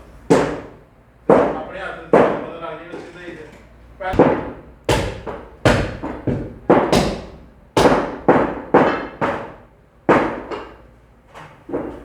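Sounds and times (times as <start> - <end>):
cleaver chopping meat: 4.1 - 9.4.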